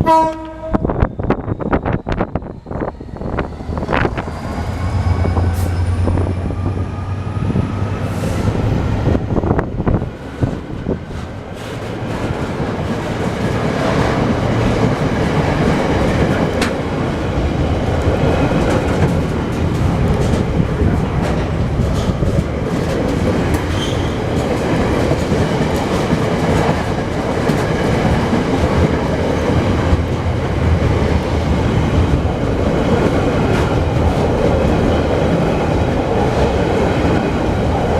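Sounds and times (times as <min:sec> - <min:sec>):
low train hum: 0:00.0 - 0:37.9
train wheels clicking over rail joints: 0:10.1 - 0:17.0, 0:17.6 - 0:37.9.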